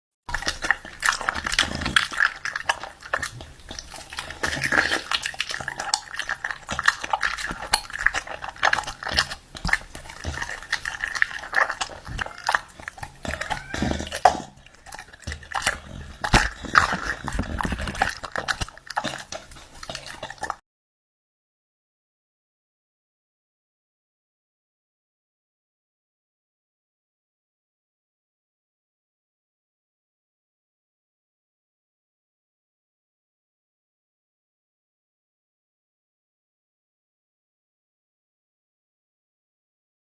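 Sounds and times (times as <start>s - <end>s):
dog whining: 11.8s - 14.3s.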